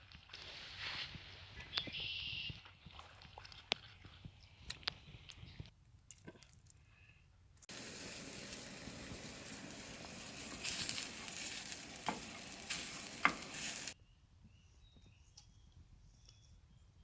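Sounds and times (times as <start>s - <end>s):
sizzling hiss with crackles: 7.6s - 14.0s.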